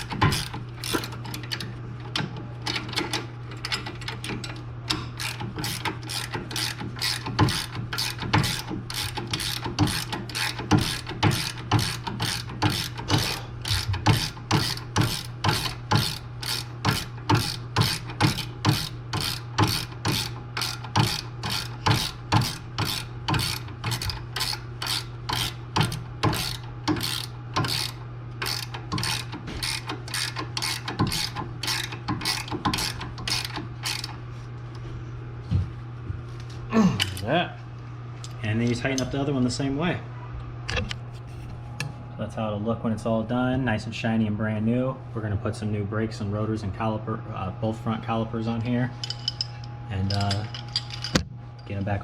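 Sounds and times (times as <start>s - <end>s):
ratchet wrench clicking: 0.0s - 1.7s, 2.7s - 34.2s
steady low hum: 0.0s - 52.0s.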